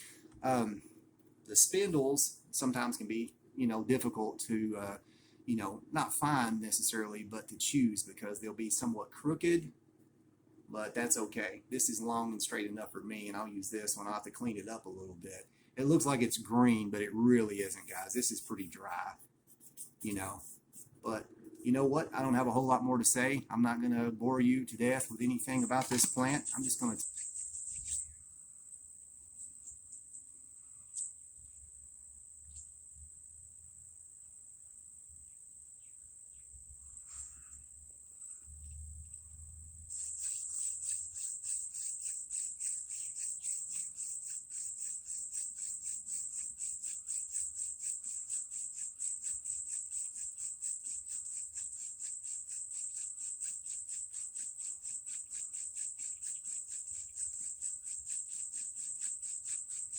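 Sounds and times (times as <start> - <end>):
insects chirring: 10.8 - 23.3, 24.8 - 59.9.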